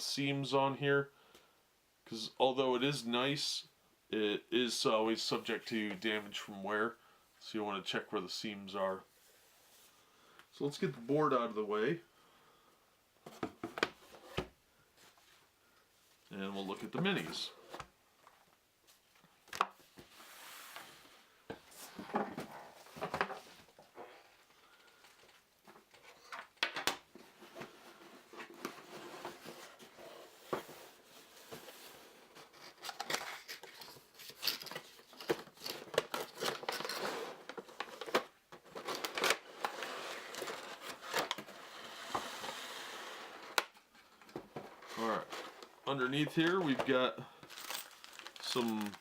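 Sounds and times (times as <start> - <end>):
plastic packaging crinkling and tearing: 32.6 - 41.5, 47.4 - 49.0.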